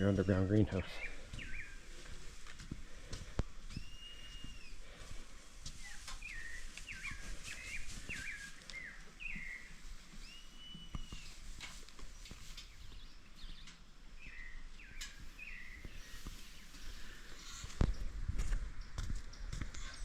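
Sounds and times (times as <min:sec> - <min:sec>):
birds whistling: 0:00.0 - 0:01.9, 0:03.7 - 0:05.0, 0:05.8 - 0:11.4, 0:12.0 - 0:17.7
faint background noise: 0:00.0 - 0:20.0.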